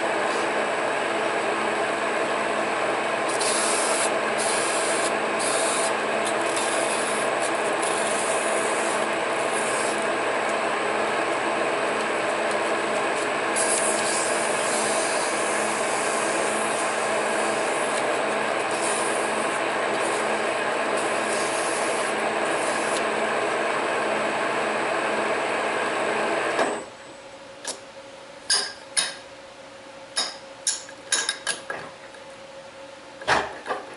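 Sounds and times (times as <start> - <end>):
metal lathe humming: 0.1 - 26.4.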